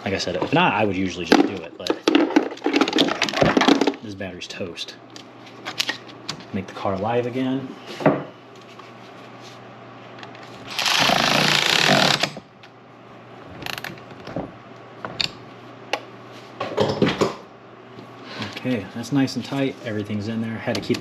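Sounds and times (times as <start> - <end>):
power tool running: 10.7 - 12.4.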